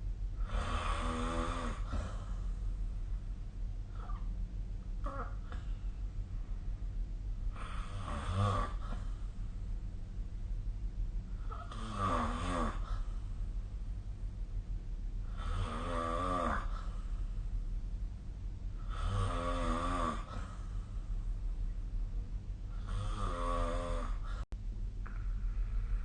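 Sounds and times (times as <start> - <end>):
steady low hum: 0.0 - 26.0
person snoring: 0.4 - 2.4, 7.5 - 9.1, 11.4 - 13.1, 15.3 - 17.0, 18.8 - 20.7, 22.7 - 24.4.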